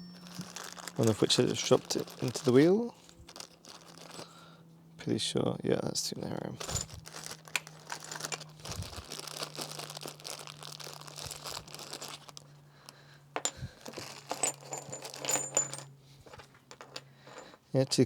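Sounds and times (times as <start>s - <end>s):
small metal parts clinking: 0.0s - 4.5s, 6.6s - 18.0s
plastic packaging crinkling: 0.1s - 4.5s, 6.6s - 15.9s.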